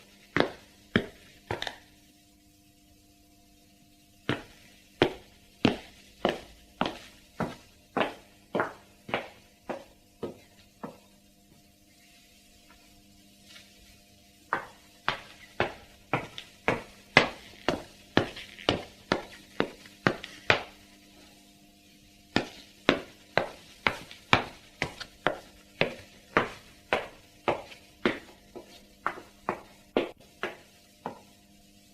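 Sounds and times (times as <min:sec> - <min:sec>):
dress shoe footsteps on hard floor: 0:00.0 - 0:01.8, 0:04.3 - 0:11.1, 0:14.4 - 0:20.8, 0:22.3 - 0:31.4
faint steady hum: 0:00.0 - 0:31.9.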